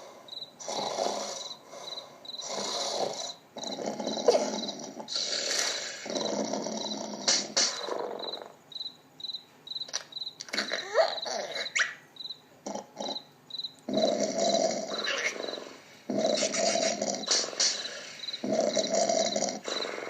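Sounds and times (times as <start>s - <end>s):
high cricket-like chirp: 0.3s - 20.0s
cartoon snoring: 0.6s - 8.6s, 10.6s - 11.8s, 12.6s - 13.3s, 13.9s - 20.0s.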